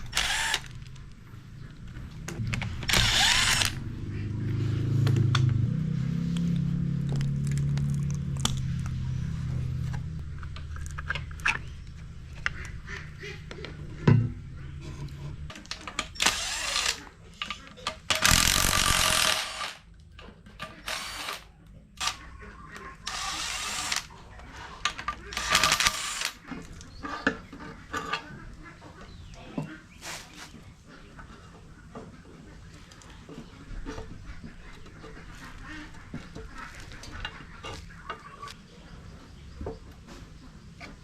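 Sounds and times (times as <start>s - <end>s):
power tool running in bursts: 0.0s - 0.7s, 2.8s - 3.8s, 16.2s - 17.0s, 18.2s - 19.8s, 23.1s - 24.1s.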